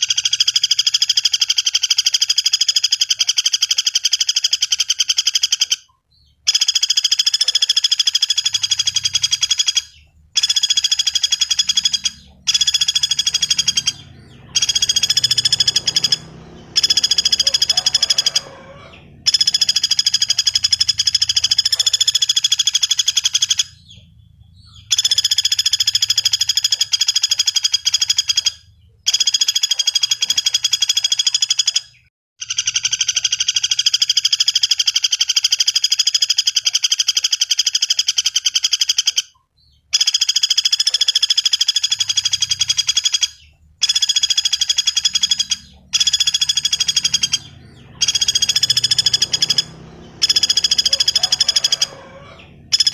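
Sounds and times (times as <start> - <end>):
woodpecker rattling trills: 0.0 - 52.9.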